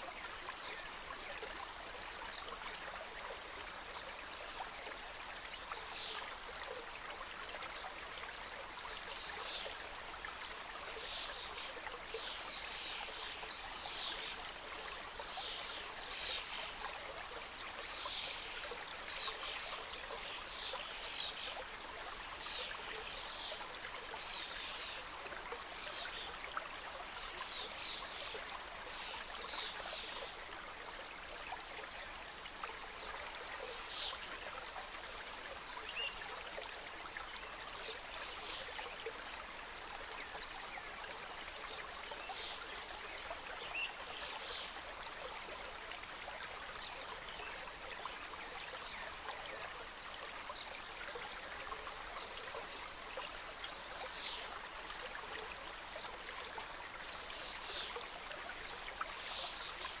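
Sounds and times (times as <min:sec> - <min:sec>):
stream rushing and splashing: 0:00.0 - 1:00.0.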